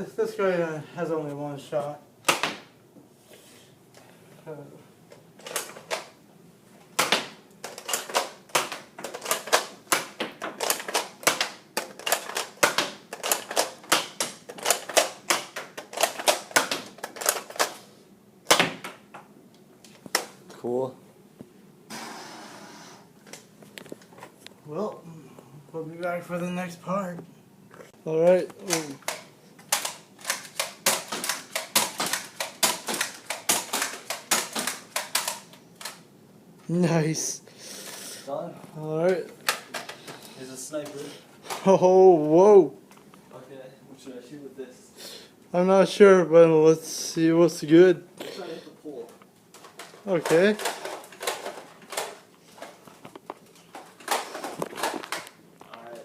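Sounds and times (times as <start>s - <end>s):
toy blaster firing plastic clicks: 28.7s - 36.0s.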